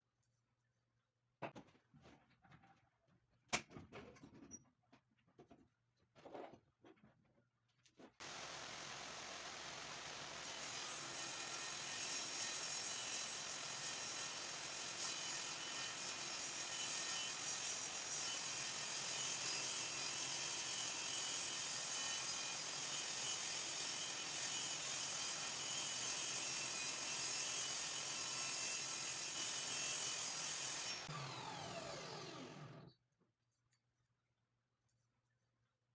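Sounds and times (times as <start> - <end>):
circular saw cutting wood: 8.2 - 32.9.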